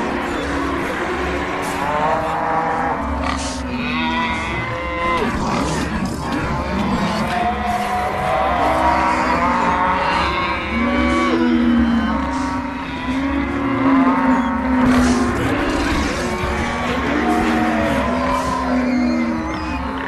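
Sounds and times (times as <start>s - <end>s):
stomach growling: 9.0s - 20.0s.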